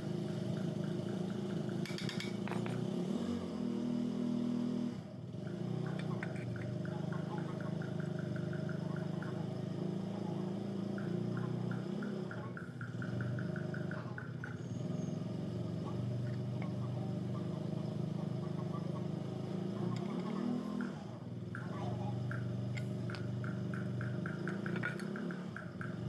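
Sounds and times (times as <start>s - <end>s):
rapid light ticking: 5.5s - 14.8s, 16.0s - 26.0s.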